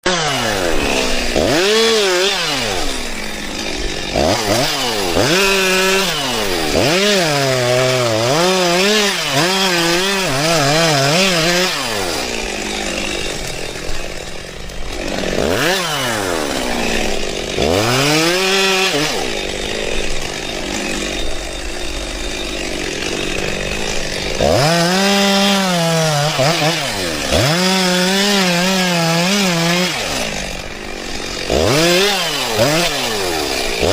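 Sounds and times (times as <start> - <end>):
electric chainsaw cutting wood: 0.0 - 33.9.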